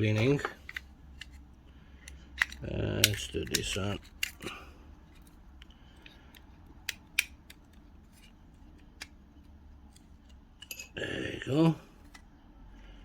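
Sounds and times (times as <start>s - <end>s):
toy car parts clicking: 0.2s - 1.4s, 2.0s - 11.0s.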